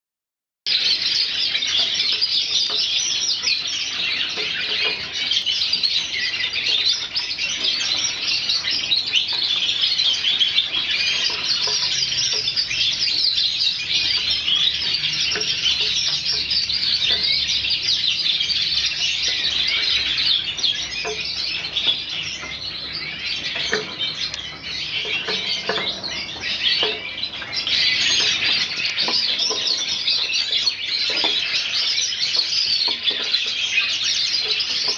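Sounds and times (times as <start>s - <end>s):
cage birds chirping: 0.7s - 34.9s.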